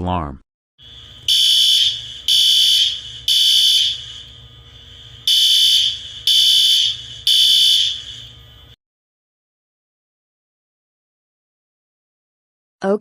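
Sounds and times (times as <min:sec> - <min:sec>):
fire alarm blasts: 0:00.8 - 0:08.4.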